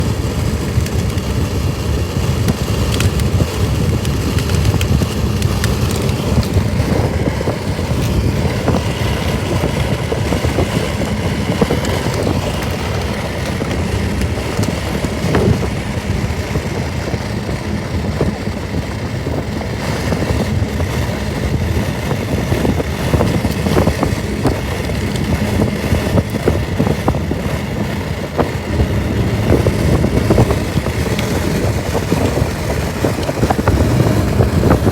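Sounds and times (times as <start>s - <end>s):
road vehicle rumbling: 0.0s - 34.9s
small clicks and knocks: 2.4s - 7.2s.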